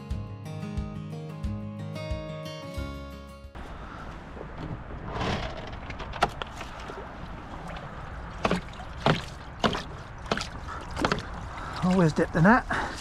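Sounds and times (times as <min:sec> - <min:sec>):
wind: 0:03.6 - 0:13.0
sharp knocks and taps: 0:08.4 - 0:11.4.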